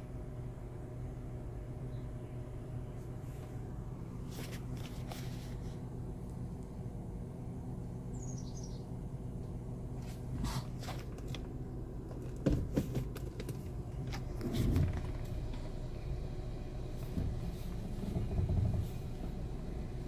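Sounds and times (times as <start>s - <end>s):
car engine idling: 0.0s - 20.0s
bird chirping: 8.1s - 8.9s.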